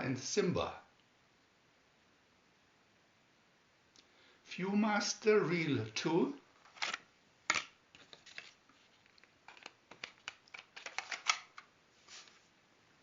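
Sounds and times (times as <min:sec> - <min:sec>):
paper or card clicking and rustling: 0:06.6 - 0:12.4.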